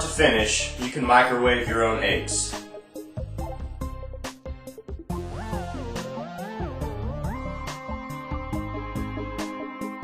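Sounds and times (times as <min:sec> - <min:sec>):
electronic synth music: 0:02.6 - 0:10.0.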